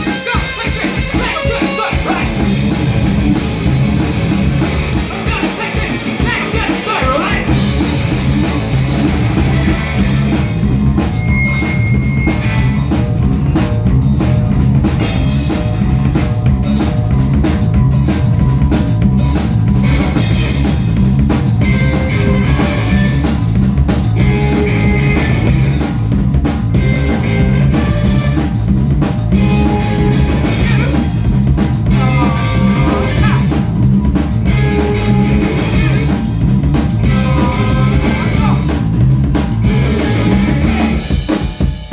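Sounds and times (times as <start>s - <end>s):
drum kit beat: 0.0s - 41.9s
live rock band playing: 0.0s - 41.9s.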